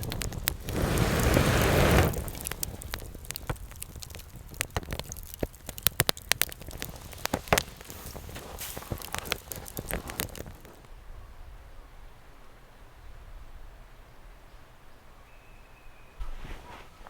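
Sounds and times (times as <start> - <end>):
rushing noise: 0.0 - 2.9
campfire crackling and popping: 0.0 - 10.9.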